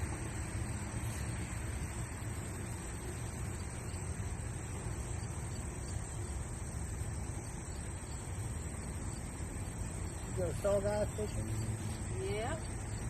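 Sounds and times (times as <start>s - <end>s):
hiss: 0.0s - 8.1s.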